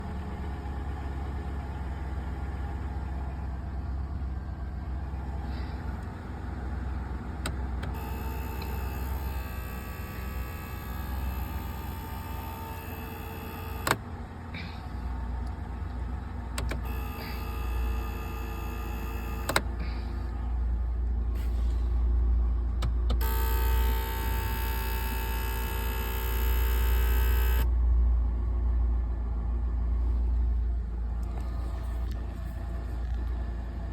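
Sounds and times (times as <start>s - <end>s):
sharp clicks: 7.8s - 14.0s, 16.6s - 19.7s
electrical buzz: 7.9s - 14.0s, 16.7s - 19.6s, 23.2s - 27.7s.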